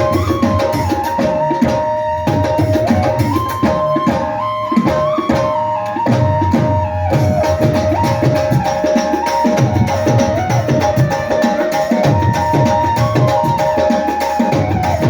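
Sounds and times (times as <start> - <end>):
melody of held notes: 0.0 - 15.0
tabla playing a rhythm: 0.0 - 15.0.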